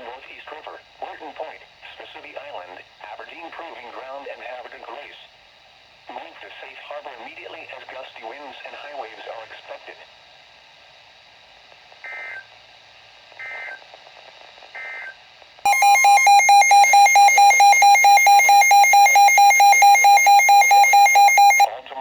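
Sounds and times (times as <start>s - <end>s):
pulsing alert tone: 15.7s - 21.7s
warbling data bursts: 15.7s - 21.7s.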